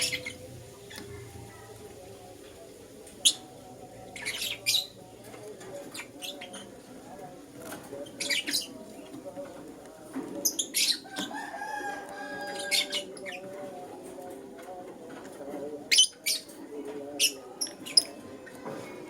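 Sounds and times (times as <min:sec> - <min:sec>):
lovebirds chirping: 0:00.0 - 0:07.2.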